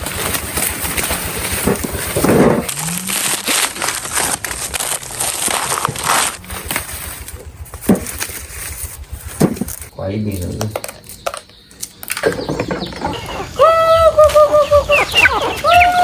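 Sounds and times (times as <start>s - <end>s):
dry material crackling: 0.0s - 9.9s.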